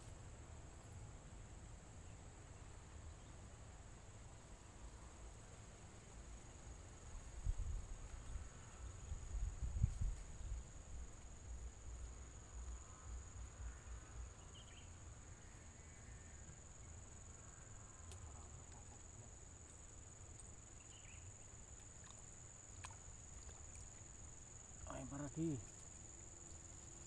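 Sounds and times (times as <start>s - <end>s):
faint chirps: 14.2s - 17.3s, 20.4s - 23.9s, 24.8s - 25.9s.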